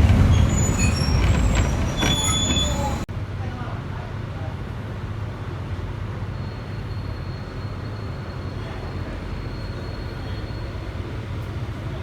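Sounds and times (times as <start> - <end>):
train rumbling: 0.0 - 3.3.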